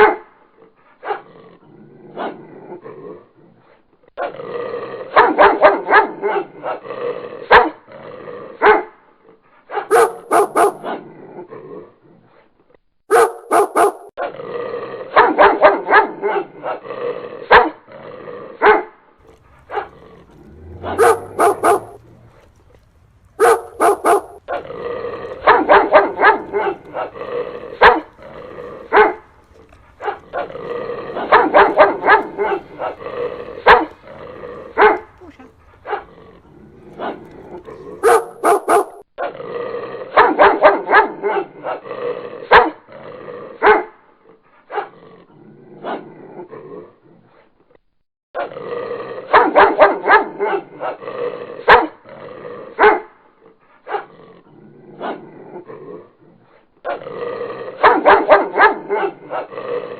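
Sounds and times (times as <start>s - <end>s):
dogs barking: 5.2s - 6.4s, 9.7s - 10.9s, 13.1s - 14.1s, 15.2s - 16.8s, 18.6s - 39.0s, 40.2s - 41.2s, 49.3s - 50.9s, 52.8s - 53.1s, 57.8s - 59.5s.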